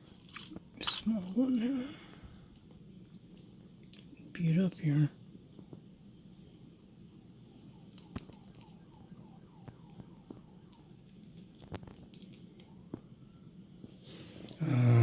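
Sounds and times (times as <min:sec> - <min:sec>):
small metal tools clicking and tapping: 0:10.3 - 0:12.5.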